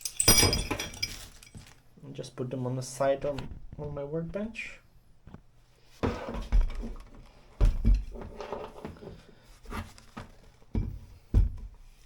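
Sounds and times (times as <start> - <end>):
metal tools clattering on workbench: 0.0 - 1.8.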